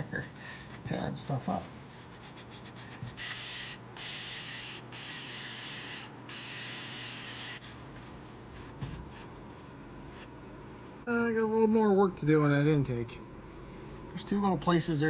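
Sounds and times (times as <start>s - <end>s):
hissing spray bursts: 3.2s - 7.6s.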